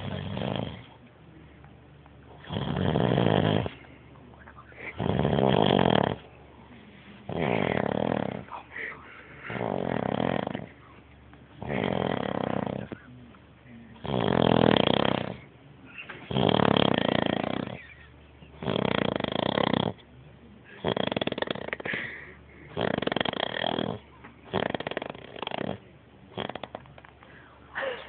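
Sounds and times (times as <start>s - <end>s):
loud snoring: 0.0s - 0.9s, 2.4s - 3.8s, 4.8s - 6.3s, 7.3s - 8.6s, 9.5s - 10.8s, 11.6s - 12.9s, 14.0s - 15.5s, 16.3s - 18.0s, 18.6s - 20.0s, 20.7s - 22.0s, 22.7s - 26.8s
quiet breaths: 0.0s - 28.0s.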